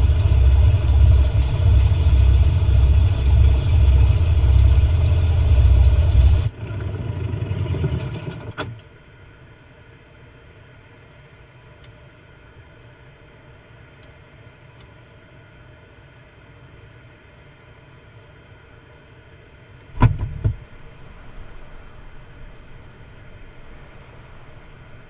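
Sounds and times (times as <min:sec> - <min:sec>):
plane piston engine running: 0:00.0 - 0:08.7, 0:19.9 - 0:25.0.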